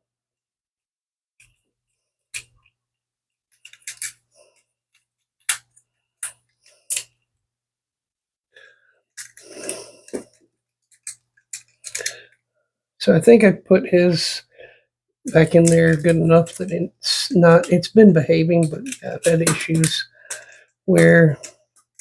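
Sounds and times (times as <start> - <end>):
plastic toy parts clicking: 3.5 - 4.3, 4.9 - 7.2, 9.2 - 9.4, 10.8 - 12.3, 15.4 - 16.7, 18.6 - 22.0.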